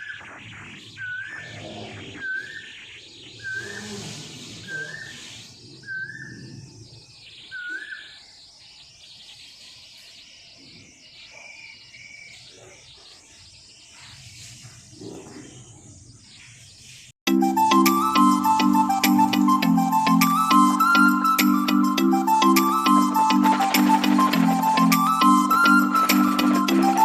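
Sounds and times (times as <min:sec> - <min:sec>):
bird calling rising ku-oo: 0:00.0 - 0:08.2, 0:17.3 - 0:27.0
faint bird chirps: 0:00.0 - 0:17.1.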